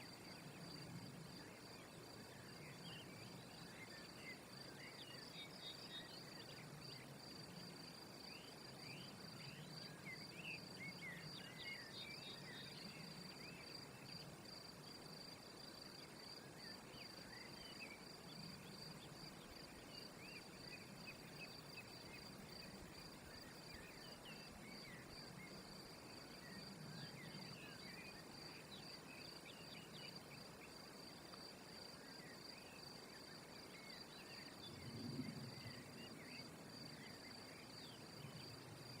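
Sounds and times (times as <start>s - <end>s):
insect trill: 0.2s - 39.0s.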